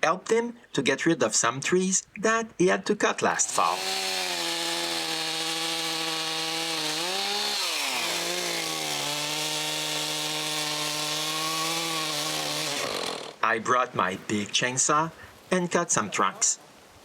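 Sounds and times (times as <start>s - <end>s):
chainsaw cutting tree: 3.3s - 13.4s.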